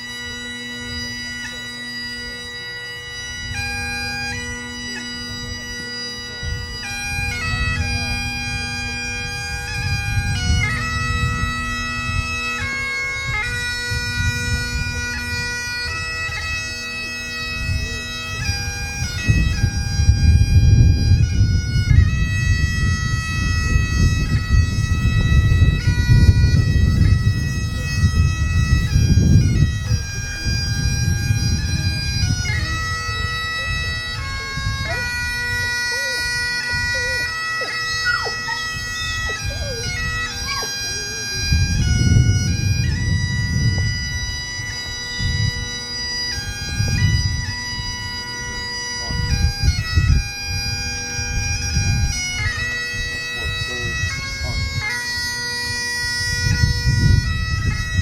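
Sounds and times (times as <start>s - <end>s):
bagpipes playing slow melody: 0.0s - 58.0s.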